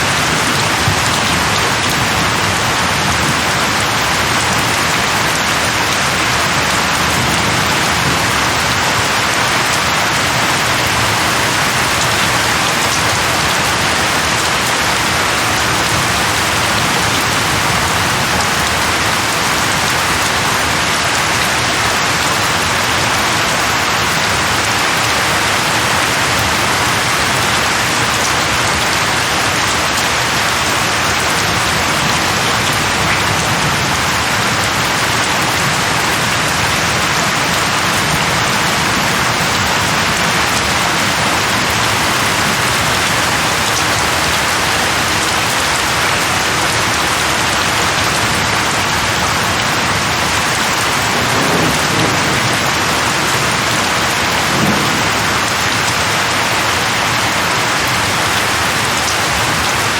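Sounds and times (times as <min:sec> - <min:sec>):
rain falling on leaves: 0:00.0 - 0:59.9.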